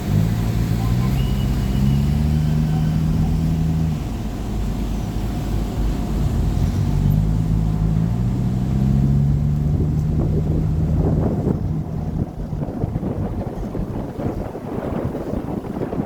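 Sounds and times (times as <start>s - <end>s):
boat engine hum: 0.0s - 16.0s
water rushing: 0.0s - 16.0s
wind rushing: 9.8s - 16.0s.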